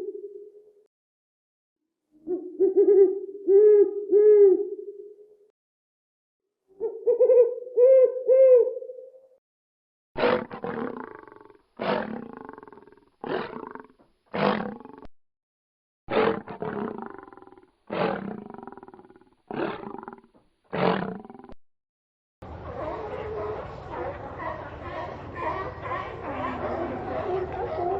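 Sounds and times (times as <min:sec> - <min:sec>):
wavering hoot: 0:02.2 - 0:05.2, 0:06.8 - 0:09.2
lion roaring grunts: 0:16.1 - 0:20.2.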